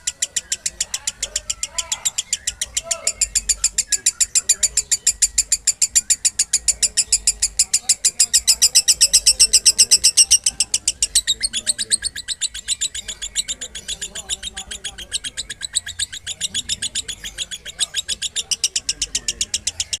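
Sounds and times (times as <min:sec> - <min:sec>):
lovebird chattering song: 0:00.0 - 0:20.0.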